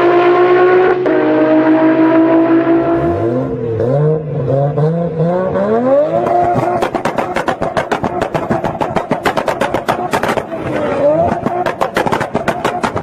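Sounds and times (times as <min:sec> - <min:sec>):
car engine high note: 0:00.0 - 0:08.7
engine rapid stutter: 0:00.0 - 0:13.0.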